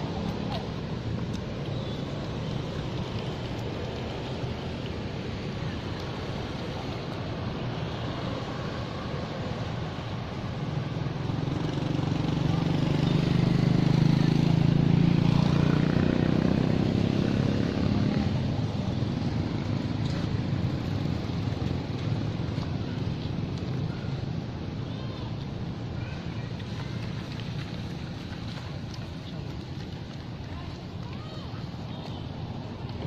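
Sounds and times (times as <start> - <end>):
outdoor background: 0.0 - 33.0
motor vehicle passing: 11.0 - 24.1.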